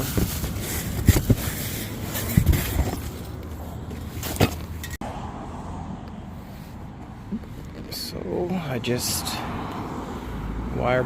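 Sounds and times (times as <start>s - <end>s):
knocks and clunks of brake parts: 0.0s - 1.6s, 2.2s - 5.0s.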